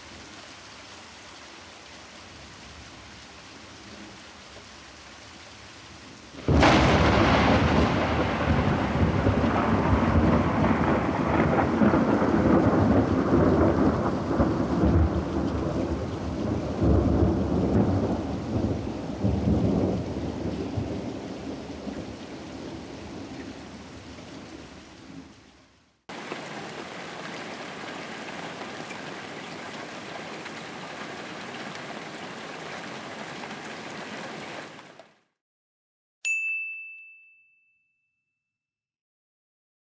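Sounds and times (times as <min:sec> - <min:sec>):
rain falling: 0:00.0 - 0:35.2
thunder crack and rumble: 0:06.4 - 0:22.0.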